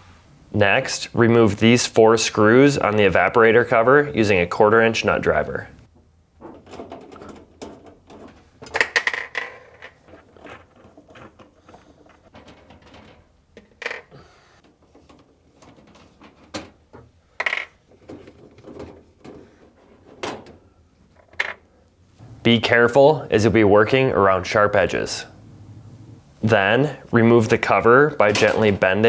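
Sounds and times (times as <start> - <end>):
handling noise: 5.8 - 22.4, 25.3 - 29.0.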